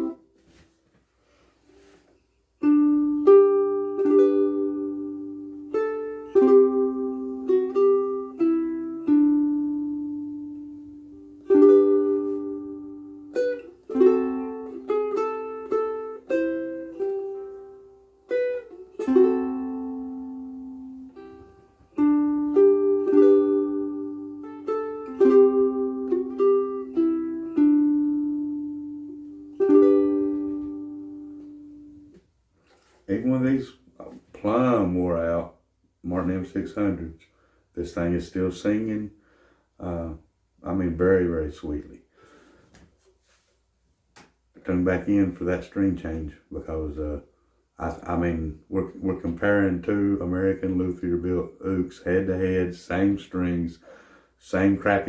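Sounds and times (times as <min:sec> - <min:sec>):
ukulele playing slow tune: 0:00.0 - 0:00.6, 0:02.6 - 0:33.0.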